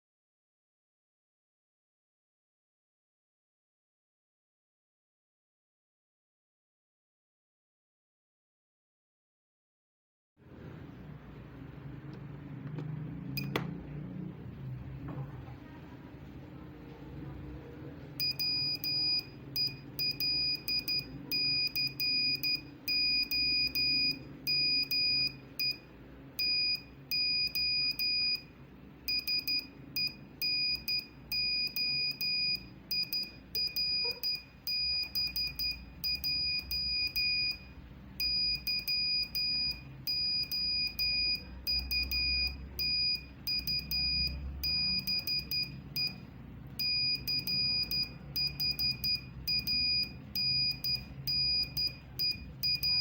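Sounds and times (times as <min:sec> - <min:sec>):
morse code beeps: 0:18.2 - 0:53.0.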